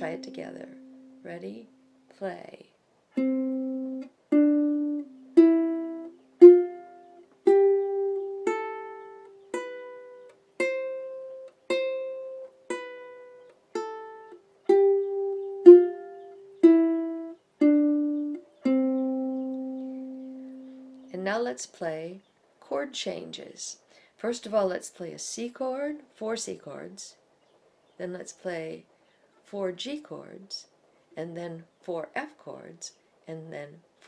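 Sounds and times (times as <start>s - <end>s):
ukulele plucked notes: 0.0s - 1.9s, 3.2s - 21.1s.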